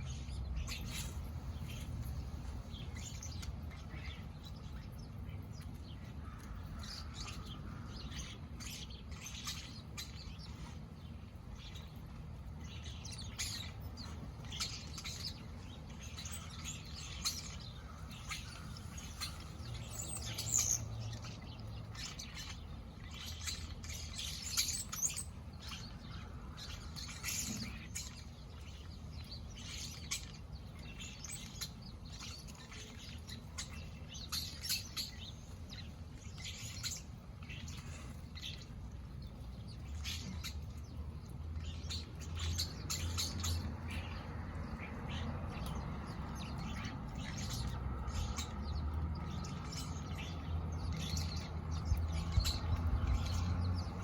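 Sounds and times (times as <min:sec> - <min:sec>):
blackbirds chirping: 0:00.0 - 0:54.0
low background rumble: 0:00.0 - 0:54.0.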